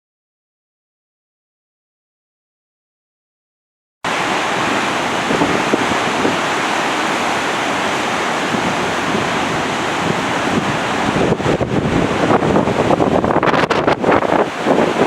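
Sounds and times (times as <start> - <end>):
strong wind: 4.1 - 15.0
surf waves breaking: 4.1 - 15.0.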